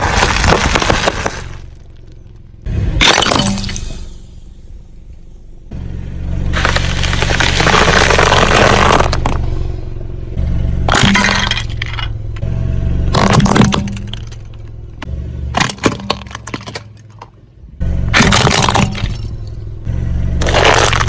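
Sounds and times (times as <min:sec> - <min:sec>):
tyre crushing brittle objects: 0:00.0 - 0:02.4, 0:06.5 - 0:09.5, 0:10.9 - 0:12.1, 0:13.1 - 0:14.6, 0:15.5 - 0:17.3, 0:18.1 - 0:19.3, 0:20.4 - 0:21.0
car engine running: 0:00.0 - 0:21.0.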